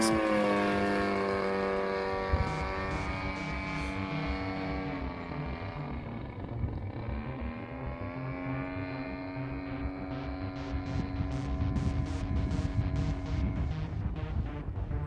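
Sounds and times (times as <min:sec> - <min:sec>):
model airplane engine: 0:00.0 - 0:14.4.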